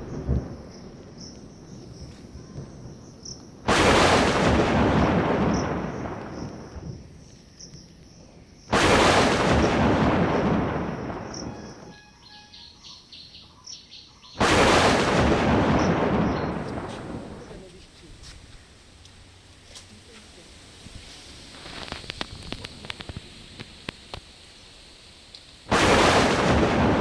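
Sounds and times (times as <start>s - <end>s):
thunder rumbling: 0.0s - 12.8s, 14.4s - 17.8s, 25.7s - 27.0s
faint bird chirps: 11.1s - 14.4s.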